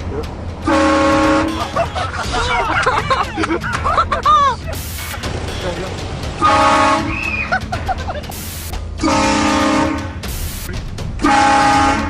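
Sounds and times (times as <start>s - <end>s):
air horn blasts: 0.6s - 1.6s, 6.4s - 7.4s, 9.0s - 10.3s, 11.2s - 12.0s.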